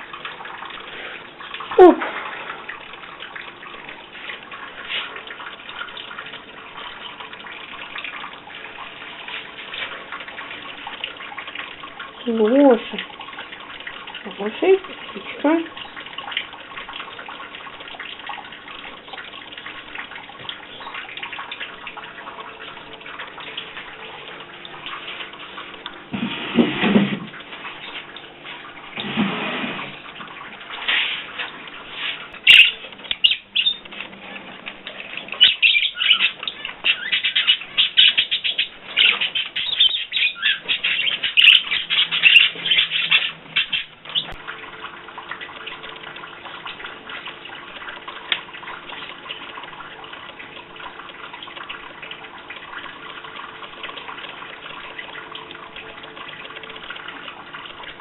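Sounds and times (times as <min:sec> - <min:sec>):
tap water running: 0:00.0 - 0:58.0
pet bird chirping: 0:32.4 - 0:33.9, 0:35.4 - 0:44.4.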